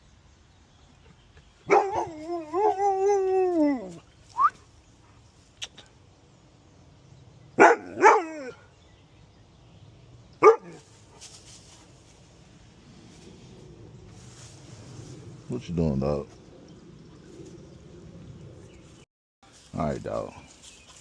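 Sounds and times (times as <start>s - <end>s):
dog barking: 1.7s - 2.8s, 7.6s - 8.6s, 10.4s - 10.8s
dog yelping: 1.7s - 3.2s, 7.6s - 8.6s, 10.4s - 10.8s
dog howling: 1.7s - 4.5s, 7.6s - 8.7s.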